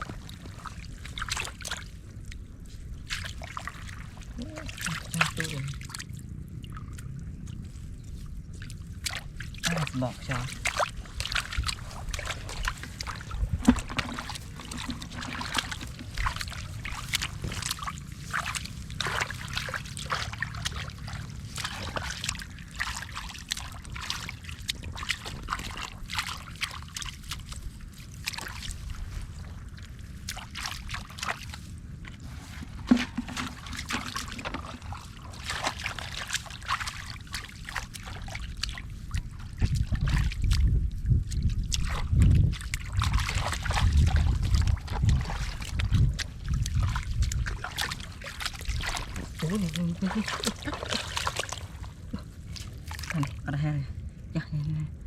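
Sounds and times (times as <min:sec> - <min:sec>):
low rumble: 0:00.0 - 0:36.6
water and mud sloshing: 0:00.0 - 0:55.0
hands splashing in mud: 0:08.7 - 0:53.3.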